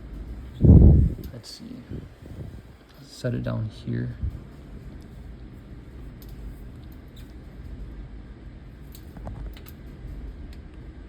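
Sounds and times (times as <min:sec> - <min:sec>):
low room rumble: 0:00.0 - 0:11.0.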